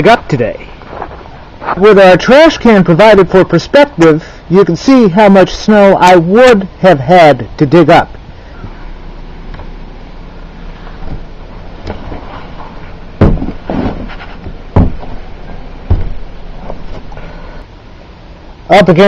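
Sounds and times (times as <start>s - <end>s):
steady background noise: 0.0s - 19.0s
footsteps in deep snow: 0.7s - 2.0s.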